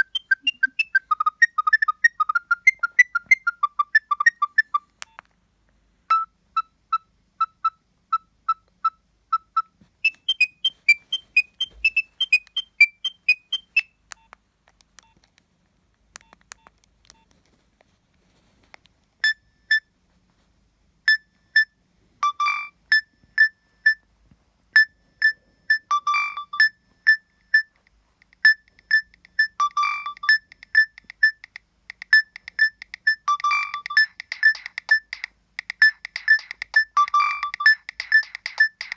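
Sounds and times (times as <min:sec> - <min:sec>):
phone ringtone beeping: 0:00.0 - 0:04.8, 0:06.1 - 0:13.9, 0:21.1 - 0:24.0, 0:24.8 - 0:27.7, 0:28.4 - 0:38.9
faint ticks: 0:27.8 - 0:29.4.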